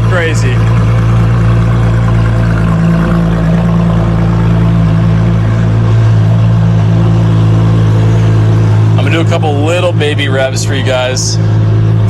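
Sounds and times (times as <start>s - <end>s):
car engine idling loudly: 0.0s - 12.0s.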